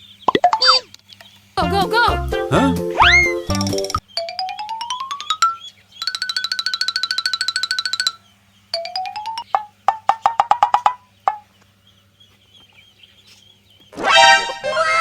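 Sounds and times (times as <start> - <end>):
burst with falling whistles: 3.0 - 3.5.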